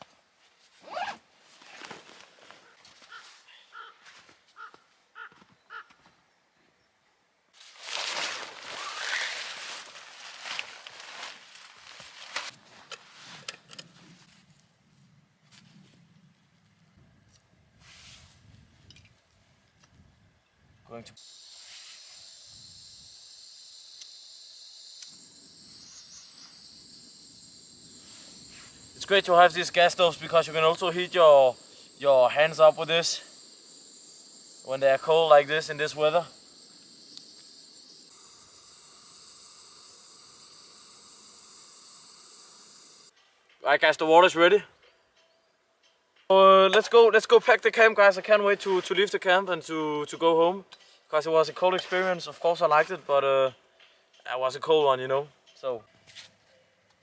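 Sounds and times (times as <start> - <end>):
gas stove burner hissing: 21.2 - 43.1.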